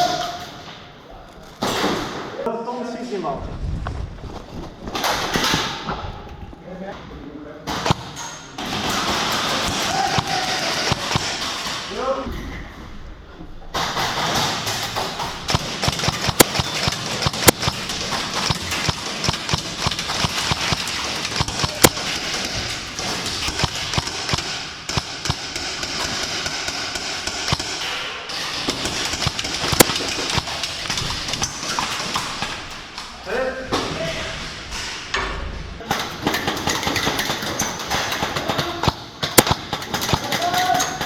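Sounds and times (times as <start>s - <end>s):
footsteps: 3.2s - 6.6s, 9.3s - 40.7s
gear rustling and knocking: 13.8s - 27.7s, 28.4s - 33.3s.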